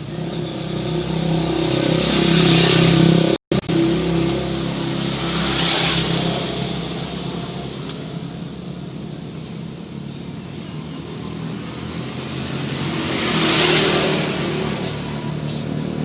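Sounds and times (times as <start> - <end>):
vehicle passing: 0.0 - 16.0.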